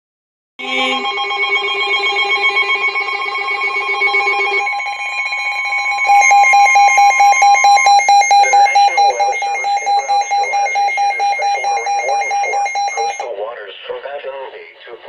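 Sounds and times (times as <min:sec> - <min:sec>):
steady alarm tone: 0:00.6 - 0:13.3
rapid ringing beeps: 0:01.0 - 0:13.2.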